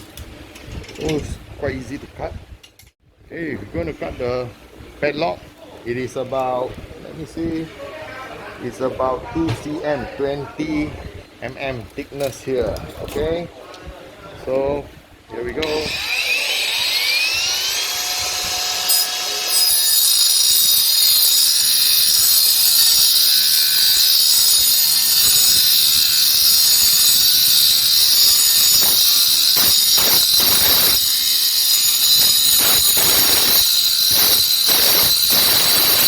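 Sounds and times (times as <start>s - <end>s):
angle grinder cutting metal: 15.6s - 36.0s.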